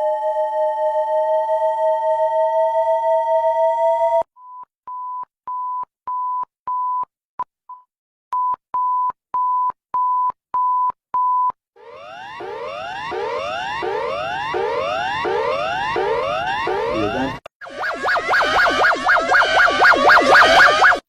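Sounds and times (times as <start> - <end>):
repeating electronic beep: 11.8 - 21.0
two-note alarm tone: 11.8 - 21.0
short electronic blips: 12.4 - 21.0.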